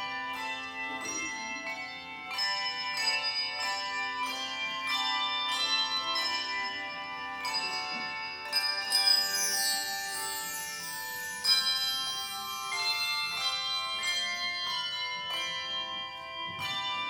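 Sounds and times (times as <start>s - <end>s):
handbells ringing in chords: 0.0s - 17.0s
high tinkling bell notes: 0.0s - 17.0s.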